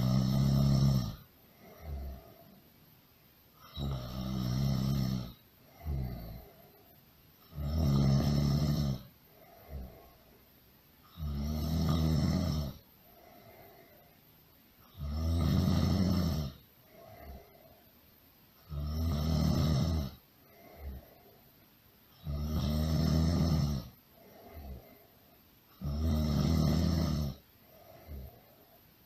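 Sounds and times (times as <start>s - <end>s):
loud snoring: 0.0s - 2.5s, 3.6s - 6.6s, 7.4s - 10.2s, 11.1s - 12.8s, 14.9s - 17.6s, 18.6s - 21.1s, 22.2s - 25.0s, 25.7s - 28.4s.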